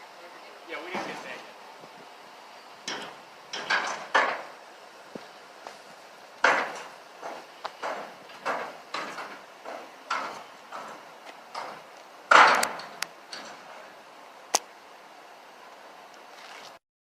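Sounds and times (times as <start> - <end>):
footsteps walking: 5.1 - 12.1, 16.3 - 16.8.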